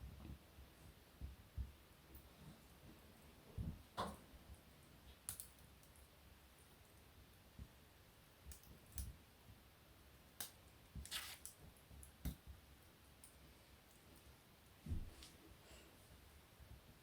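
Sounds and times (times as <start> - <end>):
faint low hiss: 0.0 - 17.0
fire crackling and popping: 3.8 - 9.3, 10.2 - 15.1.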